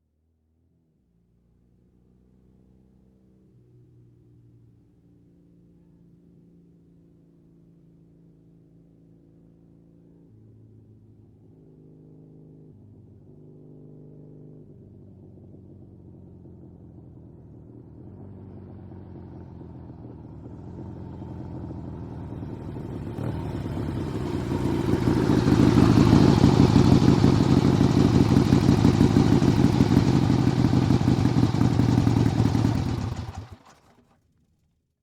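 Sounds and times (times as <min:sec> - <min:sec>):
motorcycle engine idling: 0:19.7 - 0:34.2.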